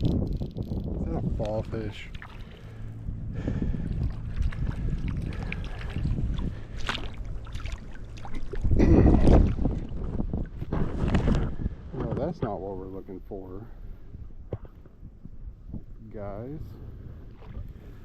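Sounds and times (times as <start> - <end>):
wind rumbling on microphone: 0.0 - 18.0
river water flowing: 3.7 - 9.4.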